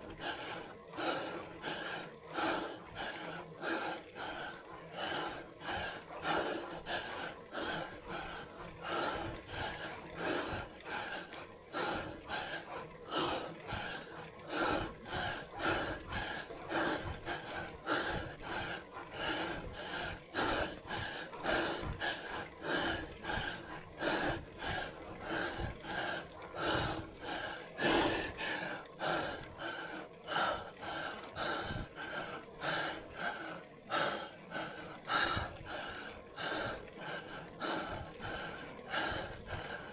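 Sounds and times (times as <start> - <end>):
person breathing hard: 0.0 - 39.9.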